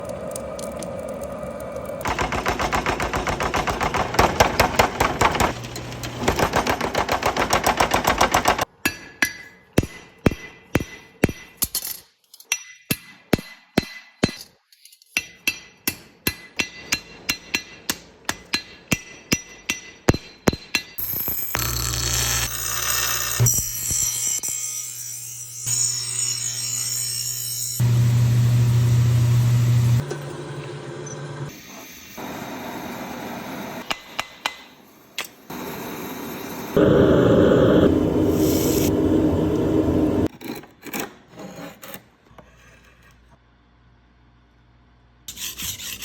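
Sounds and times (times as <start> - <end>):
hammer striking steel on anvil: 8.8 - 11.9, 12.5 - 14.5, 15.2 - 21.8, 33.8 - 34.8.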